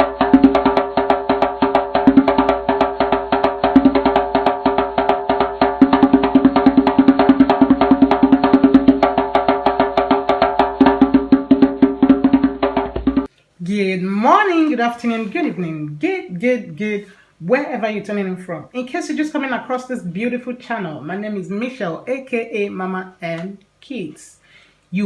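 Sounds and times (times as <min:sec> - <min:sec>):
music with fast clicking beat: 0:00.0 - 0:13.3.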